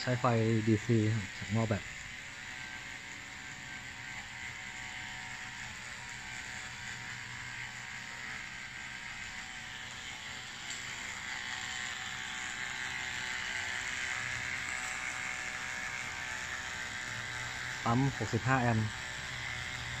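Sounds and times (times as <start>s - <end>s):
water heater humming and hissing: 0.0s - 20.0s.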